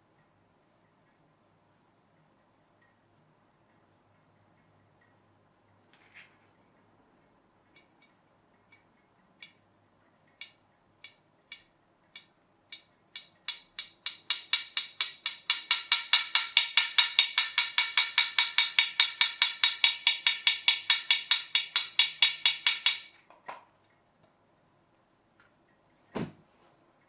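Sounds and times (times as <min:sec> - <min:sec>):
sharp clicks on hard surface: 0:10.4 - 0:23.7.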